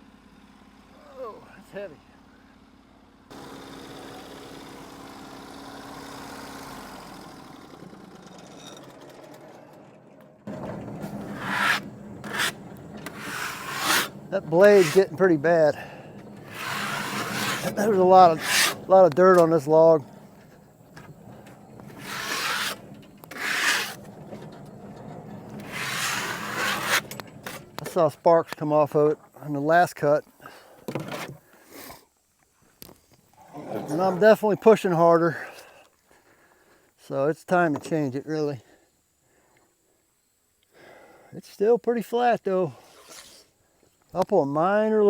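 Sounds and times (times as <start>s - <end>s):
sawmill engine idling: 0.1s - 8.5s, 10.5s - 28.2s
brushing strokes on rough wood: 10.5s - 24.6s, 25.3s - 28.1s, 42.8s - 43.5s.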